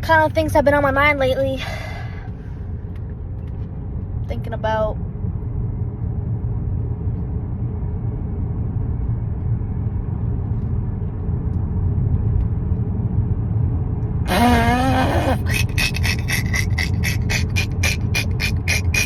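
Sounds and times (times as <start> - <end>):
car driving rumble inside cabin: 0.0 - 19.0
wavering pitched sound: 14.3 - 19.0.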